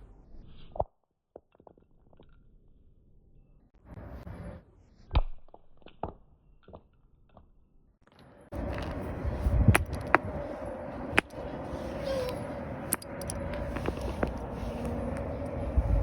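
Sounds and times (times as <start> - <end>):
handling noise: 8.1 - 16.0.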